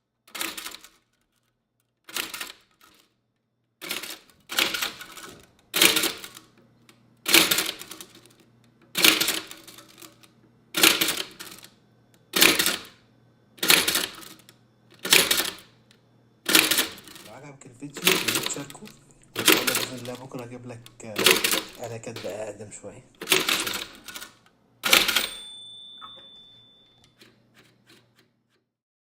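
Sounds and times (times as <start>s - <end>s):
typewriter clacking: 3.8s - 6.5s, 7.3s - 8.4s, 9.0s - 11.7s, 12.4s - 13.0s, 13.6s - 14.4s, 15.0s - 15.7s, 16.5s - 25.5s.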